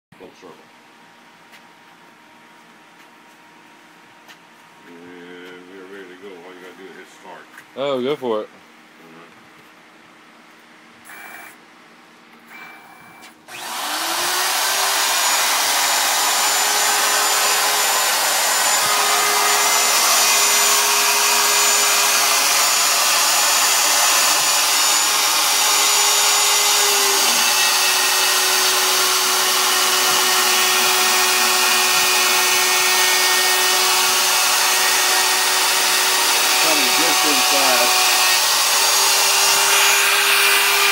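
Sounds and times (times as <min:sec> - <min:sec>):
router spindle whining: 0:11.1 - 0:11.6, 0:12.5 - 0:40.9.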